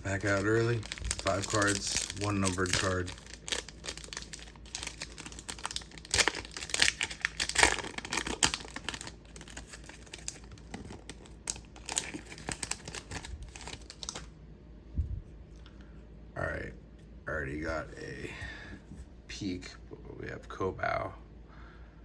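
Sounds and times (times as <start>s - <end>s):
wrapper tearing and crinkling: 0.0s - 14.3s.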